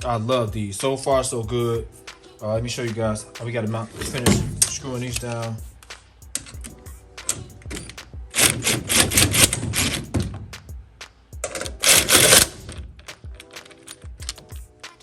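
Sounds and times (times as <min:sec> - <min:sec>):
screwdriver clicking: 0:11.4 - 0:14.6.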